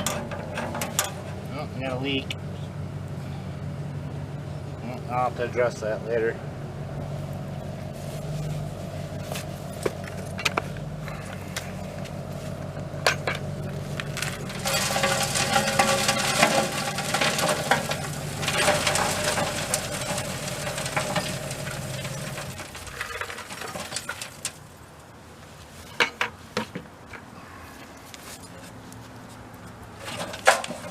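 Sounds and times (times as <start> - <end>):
charcoal clattering into hopper: 0.0 - 1.5, 13.0 - 24.6, 30.0 - 30.9
steady low hum: 0.0 - 23.1.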